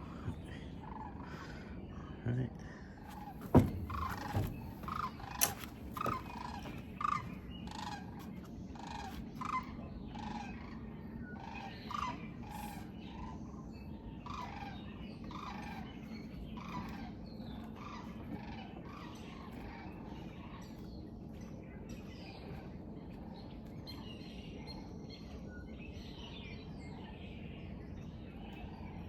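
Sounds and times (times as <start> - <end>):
bird calling: 0.0 - 13.6.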